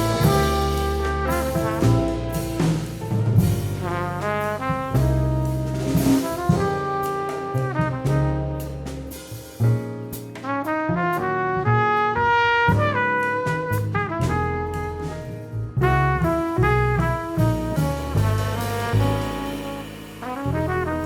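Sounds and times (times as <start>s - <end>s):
trumpet melody: 0.0s - 9.6s, 10.4s - 21.0s
drum and cymbal hits: 0.0s - 10.5s, 17.8s - 21.0s
bass: 0.0s - 21.0s
piano: 0.0s - 21.0s.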